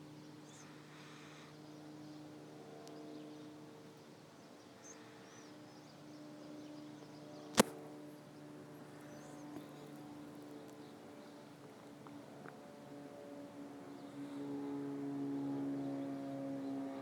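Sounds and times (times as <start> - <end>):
sharp click: 7.5 - 7.8.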